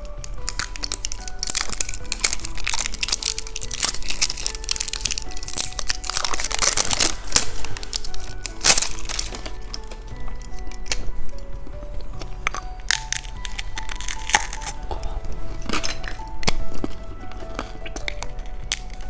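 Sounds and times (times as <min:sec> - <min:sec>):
plastic packaging crinkling: 0:00.0 - 0:19.0
soft background music: 0:00.0 - 0:19.0.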